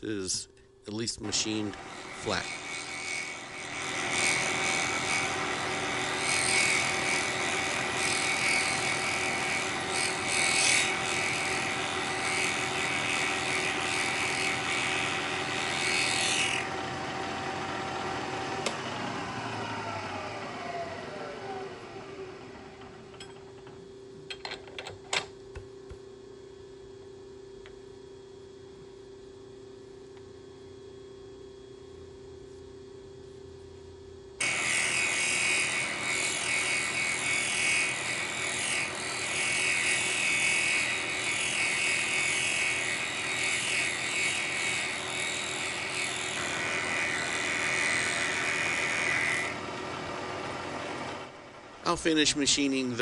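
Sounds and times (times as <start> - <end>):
steady machine hum: 0.0 - 53.0
spindle winding down whine: 0.9 - 25.2
milling machine cutting metal: 1.2 - 18.7, 34.4 - 49.6.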